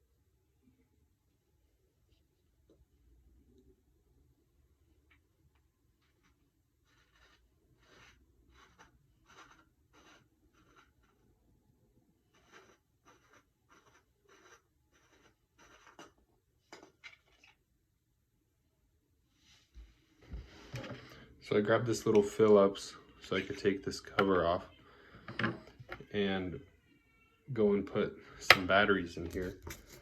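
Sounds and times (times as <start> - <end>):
screwdriver scraping in screw: 12.3 - 16.2.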